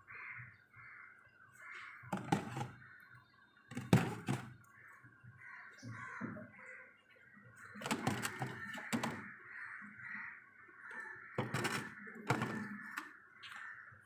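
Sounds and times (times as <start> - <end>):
plastic boxes knocking: 2.1 - 2.8, 3.7 - 4.6, 7.8 - 9.3, 11.4 - 13.0.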